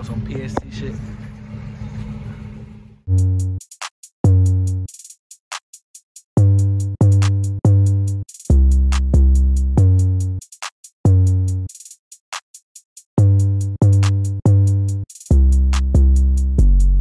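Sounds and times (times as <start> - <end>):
low vehicle rumble: 0.0 - 3.1
hip-hop drum machine beat: 3.1 - 17.0
deep booming bass: 6.4 - 10.3, 13.2 - 17.0
hi-hat ticks: 8.2 - 9.1, 10.2 - 13.2, 15.0 - 15.9.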